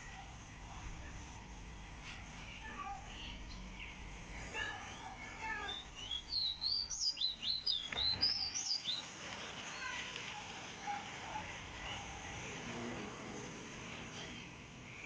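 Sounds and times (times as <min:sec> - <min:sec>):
faint bird chirps: 0:03.2 - 0:09.1
bird singing warbled phrase: 0:05.5 - 0:09.0.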